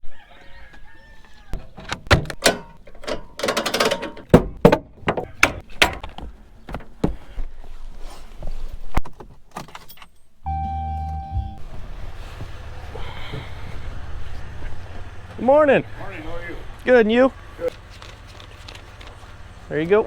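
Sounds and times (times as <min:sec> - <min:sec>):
knocks of hard objects handled: 0:01.6 - 0:07.2.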